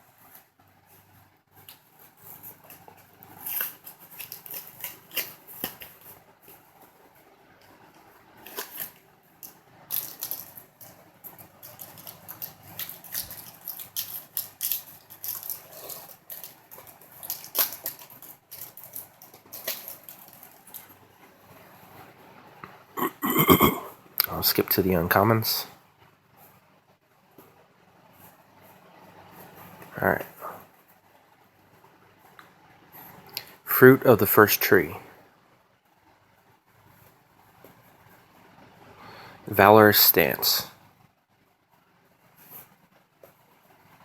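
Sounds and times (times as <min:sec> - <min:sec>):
cards being handled: 0:01.6 - 0:06.9
foil wrapper crinkling: 0:01.6 - 0:06.9, 0:08.3 - 0:21.0.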